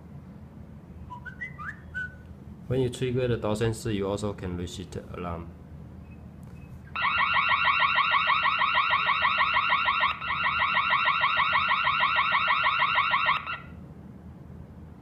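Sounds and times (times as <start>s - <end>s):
burglar alarm siren warbling: 7.0s - 13.8s.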